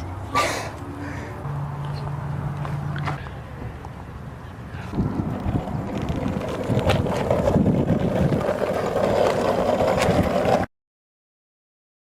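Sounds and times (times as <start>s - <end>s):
wind rumbling on microphone: 4.7s - 10.7s.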